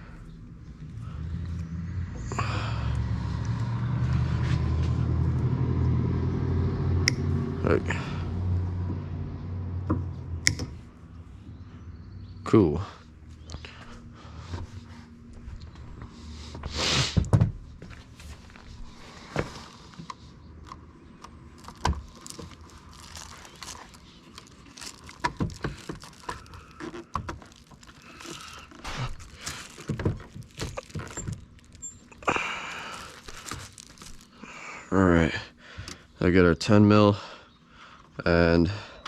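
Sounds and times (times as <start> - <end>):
handling clicks and knocks: 19.4 - 32.2.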